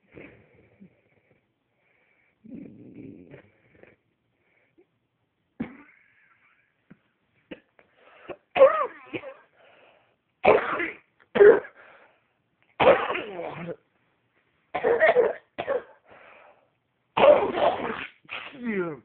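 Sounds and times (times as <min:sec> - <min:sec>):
person clearing throat: 0:05.6 - 0:06.0, 0:10.5 - 0:11.8, 0:12.8 - 0:13.8, 0:14.8 - 0:16.0, 0:17.2 - 0:18.6
person coughing: 0:05.6 - 0:06.0, 0:08.3 - 0:09.5, 0:10.5 - 0:11.8, 0:12.8 - 0:13.8, 0:14.8 - 0:16.0.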